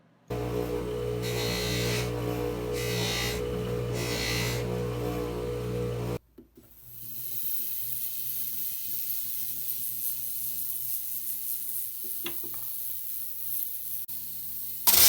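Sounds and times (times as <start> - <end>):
polishing machine humming: 0.3 - 6.2.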